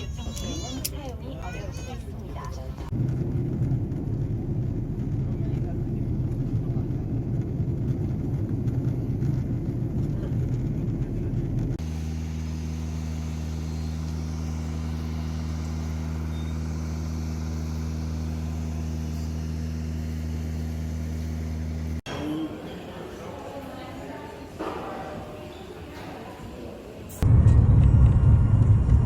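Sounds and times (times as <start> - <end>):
vehicle engine drone: 2.4 - 22.2, 27.2 - 29.0.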